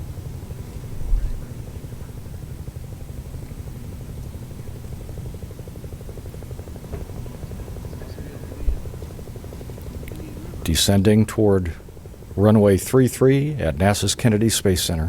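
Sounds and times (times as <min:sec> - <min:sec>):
jet engines rumbling: 0:00.0 - 0:15.0.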